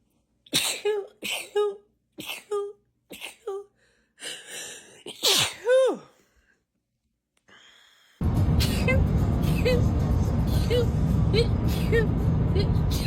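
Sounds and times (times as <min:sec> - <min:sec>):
woman sneezing: 0:00.6 - 0:03.7, 0:05.0 - 0:06.2, 0:08.6 - 0:09.8.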